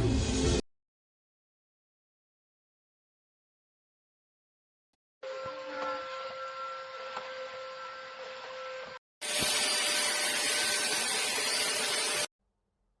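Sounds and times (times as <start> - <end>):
vacuum cleaner motor whining: 9.2 - 12.3.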